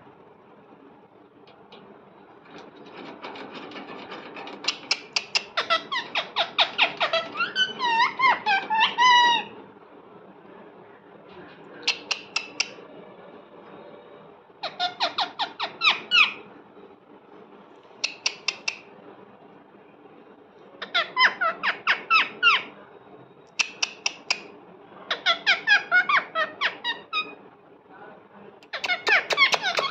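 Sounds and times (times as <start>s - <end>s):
parrot squawking: 4.6s - 9.5s, 11.8s - 12.8s, 14.6s - 16.4s, 18.0s - 18.8s, 20.8s - 22.7s, 25.1s - 27.4s, 28.6s - 29.9s.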